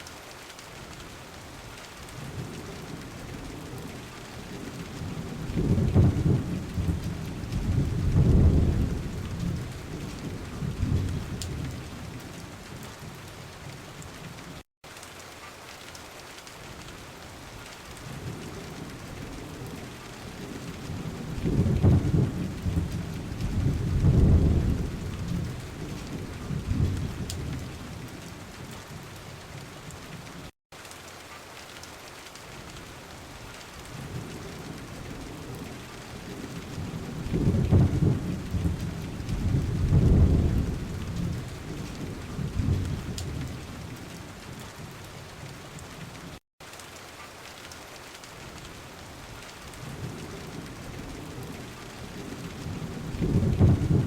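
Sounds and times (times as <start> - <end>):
steady rain: 0.0 - 54.0
rolling thunder: 2.2 - 13.1, 18.0 - 28.8, 33.9 - 44.9, 49.7 - 54.0.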